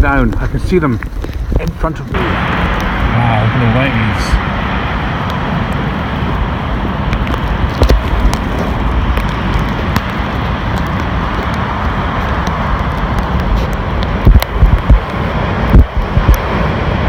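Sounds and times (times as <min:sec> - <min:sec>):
wind buffeting microphone: 0:00.0 - 0:17.0
heavy surf: 0:00.8 - 0:17.0.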